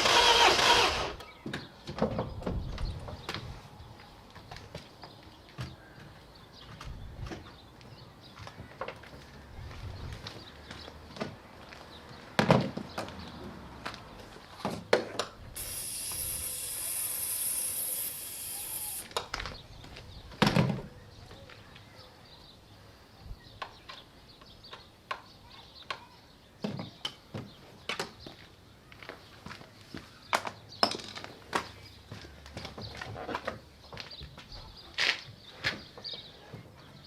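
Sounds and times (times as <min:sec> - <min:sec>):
steady hiss: 0:15.6 - 0:19.1.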